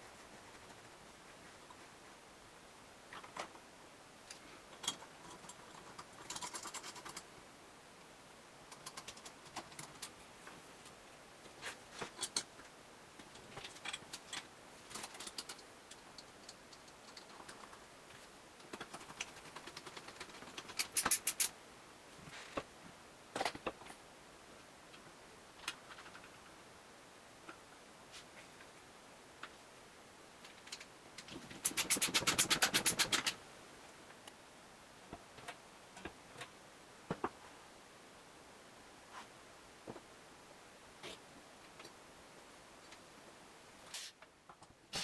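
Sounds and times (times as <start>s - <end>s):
small hard parts clicking and rattling: 4.3s - 7.3s, 8.7s - 10.6s, 12.0s - 21.6s, 30.4s - 33.4s.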